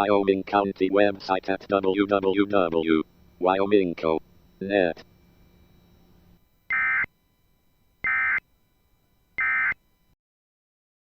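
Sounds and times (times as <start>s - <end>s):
screechy digital data tones: 6.7s - 7.1s, 8.0s - 8.4s, 9.4s - 9.8s.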